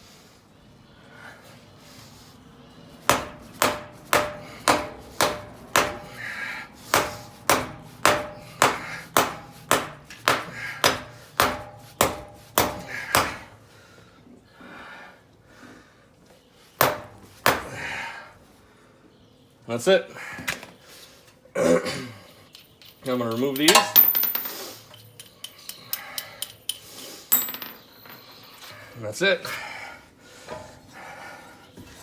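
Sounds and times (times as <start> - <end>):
hammer striking metal shaft: 3.0 - 13.5, 16.8 - 17.7.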